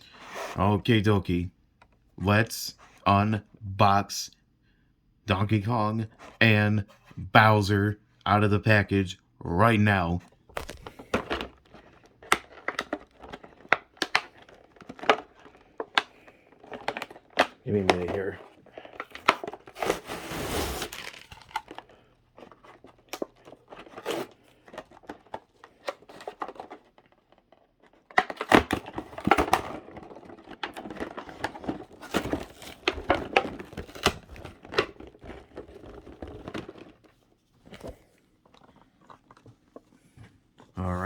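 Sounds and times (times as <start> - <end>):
packaging tearing and crinkling: 10.5 - 11.1, 18.7 - 21.9, 28.1 - 36.8.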